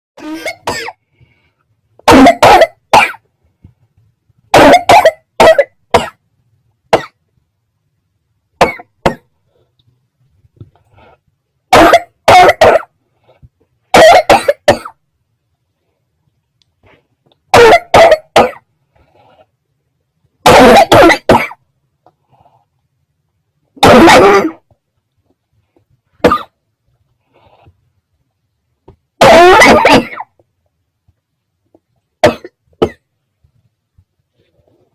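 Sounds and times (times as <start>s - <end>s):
person coughing loudly: 0.2s - 1.0s, 2.0s - 3.2s, 4.5s - 6.2s, 8.6s - 9.3s, 11.7s - 13.0s, 13.9s - 15.0s, 17.5s - 18.7s, 20.4s - 21.6s, 23.8s - 24.6s, 26.2s - 26.6s, 29.2s - 30.4s, 32.2s - 33.0s.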